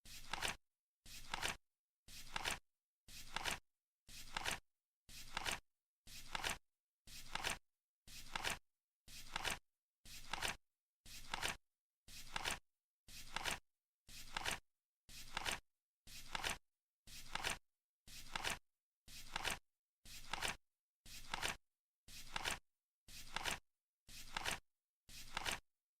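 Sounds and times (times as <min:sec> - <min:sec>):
flip clock card flipping: 0:00.2 - 0:00.6, 0:01.2 - 0:01.6, 0:03.3 - 0:03.6, 0:04.3 - 0:04.6, 0:05.3 - 0:05.6, 0:08.3 - 0:08.6, 0:13.3 - 0:13.6, 0:23.3 - 0:23.6, 0:24.3 - 0:24.6, 0:25.3 - 0:25.6.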